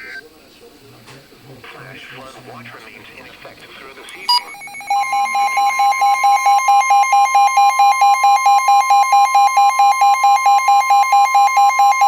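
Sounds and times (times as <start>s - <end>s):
loud steady alert tone: 4.3s - 12.0s
rapid pulsed beeps: 4.3s - 12.0s.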